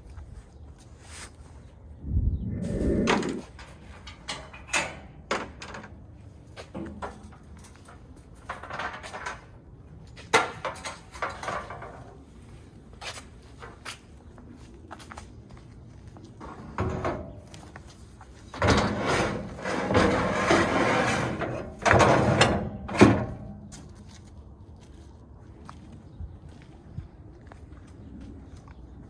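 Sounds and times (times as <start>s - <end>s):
metal ramps knocking and clanking: 3.6s - 6.0s, 18.5s - 23.6s
metal scraping: 18.6s - 23.4s.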